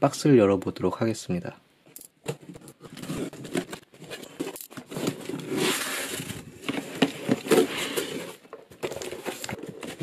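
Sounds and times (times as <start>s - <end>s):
cardboard and packing material rustling: 2.2s - 10.0s.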